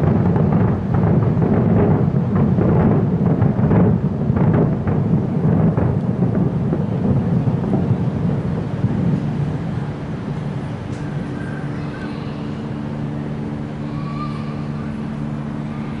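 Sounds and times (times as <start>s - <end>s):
fireworks bursting: 0.0s - 11.3s.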